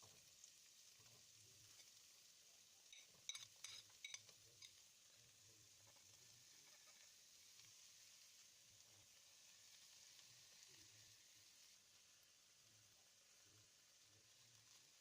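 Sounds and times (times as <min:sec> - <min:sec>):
food sizzling in a pan: 0:00.0 - 0:15.0
utensil clinking against pan: 0:03.0 - 0:04.8.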